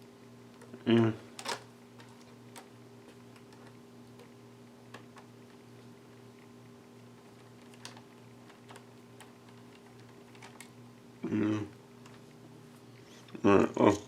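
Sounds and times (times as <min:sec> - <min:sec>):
steady low hum: 0:00.0 - 0:14.0
small clicks and taps: 0:01.4 - 0:05.6, 0:07.3 - 0:10.8.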